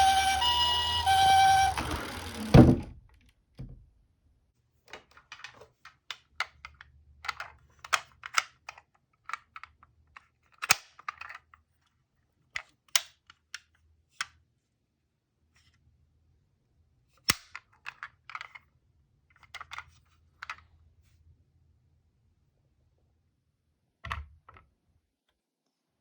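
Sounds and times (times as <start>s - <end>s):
toy cars clicking and clacking: 0.0s - 2.8s.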